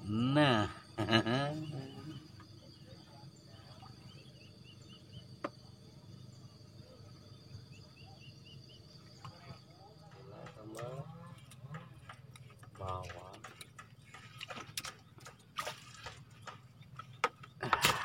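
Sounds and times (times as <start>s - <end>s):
short insect chirps: 0.0s - 11.7s
high insect drone: 0.0s - 14.1s.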